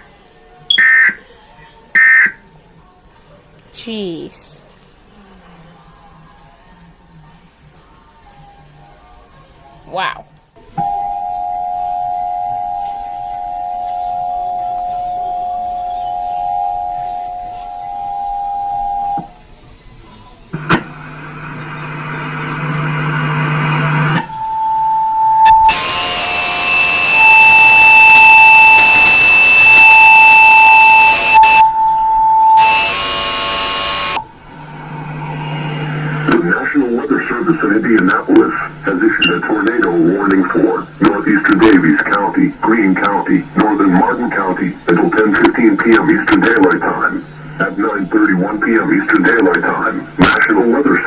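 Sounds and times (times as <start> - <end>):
harsh buzzy electronic signal: 10.6 - 19.5, 20.6 - 51.0
two-tone alert sound: 10.8 - 19.4, 24.2 - 34.3.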